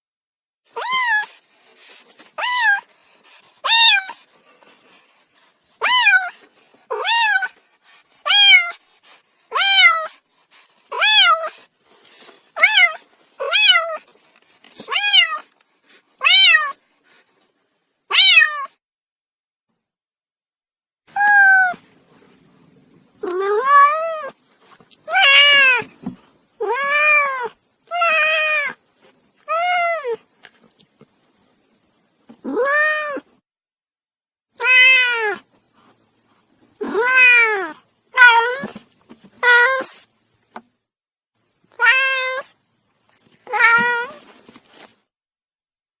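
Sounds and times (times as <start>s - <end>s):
kitten meowing: 18.1s - 18.7s, 21.2s - 21.8s, 34.6s - 35.4s, 41.8s - 42.4s.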